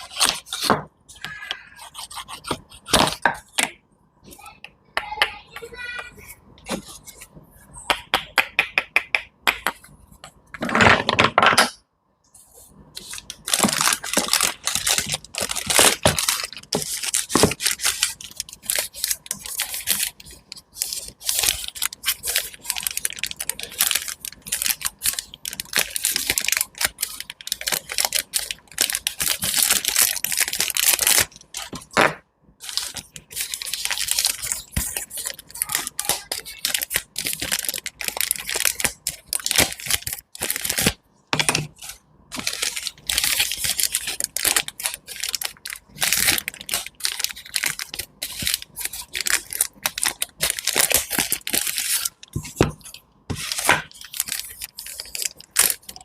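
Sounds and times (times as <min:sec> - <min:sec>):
food crunching and crackling: 0:13.0 - 0:32.0, 0:32.6 - 0:56.0.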